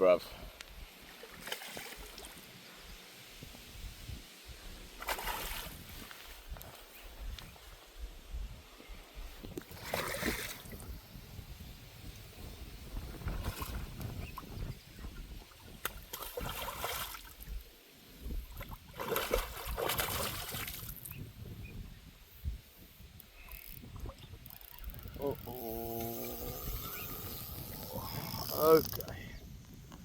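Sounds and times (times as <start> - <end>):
water splashing and sloshing: 1.0 - 2.6, 5.0 - 7.5, 9.4 - 10.9, 12.9 - 17.6, 18.2 - 21.2
wind rumble on microphone: 2.8 - 30.0.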